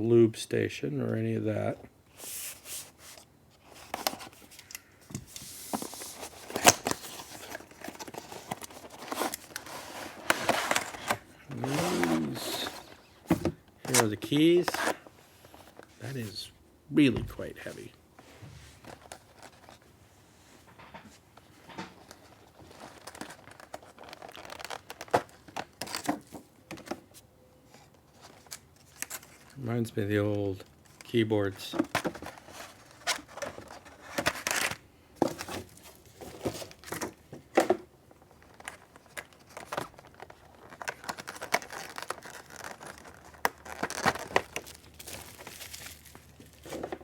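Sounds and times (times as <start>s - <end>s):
packaging rustling and tearing: 2.2s - 15.9s, 18.8s - 19.8s, 22.0s - 26.5s, 28.0s - 29.6s, 31.8s - 37.2s, 38.1s - 47.0s.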